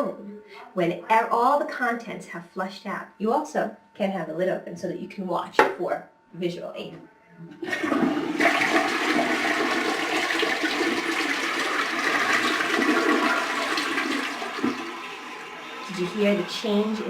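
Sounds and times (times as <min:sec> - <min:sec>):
toilet flushing: 0:07.6 - 0:17.0.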